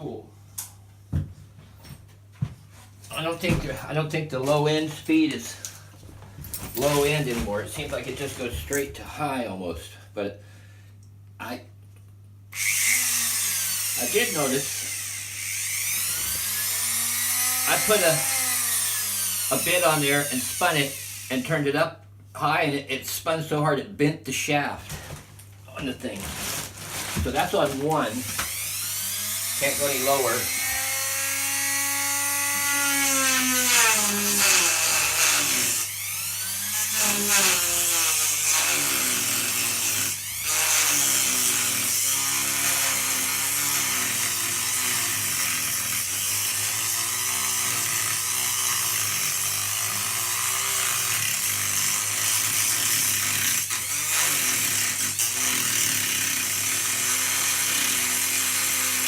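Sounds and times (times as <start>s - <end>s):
power tool grinding tiles: 12.6s - 21.4s, 26.2s - 59.0s.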